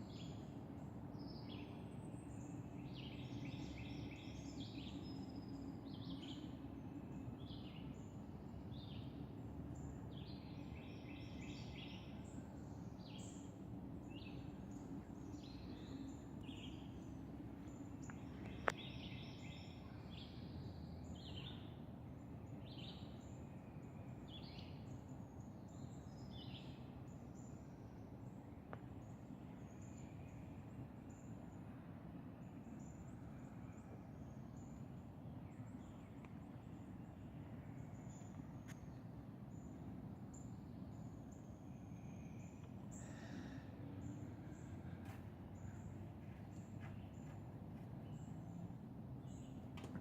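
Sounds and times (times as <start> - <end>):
low outdoor rumble: 0.0 - 50.0
birds chirping: 41.8 - 50.0.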